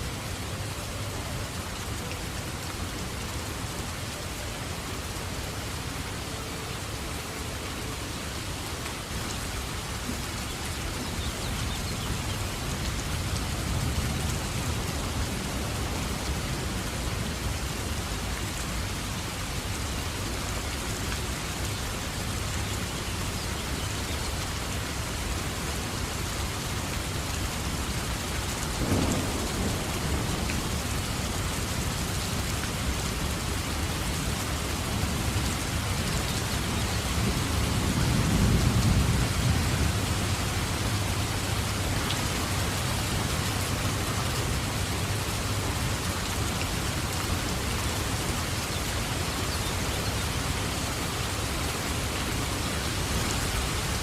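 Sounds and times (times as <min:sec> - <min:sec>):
heavy rain falling: 0:00.0 - 0:54.0
low rolling thunder: 0:28.8 - 0:32.0.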